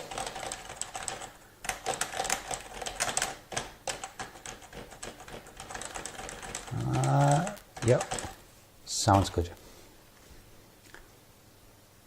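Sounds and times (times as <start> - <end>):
fast typing on keyboard: 0.0 - 8.4.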